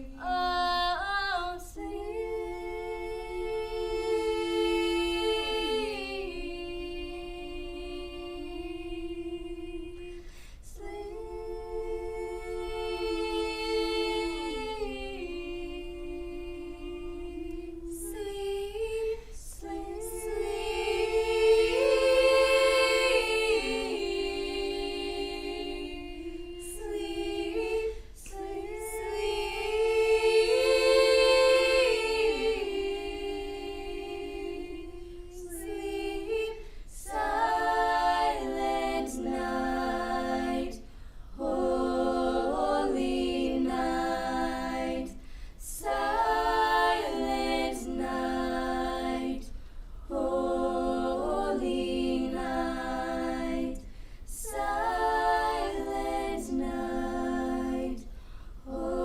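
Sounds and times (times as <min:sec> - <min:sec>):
choir singing a cappella: 0:00.0 - 0:59.0.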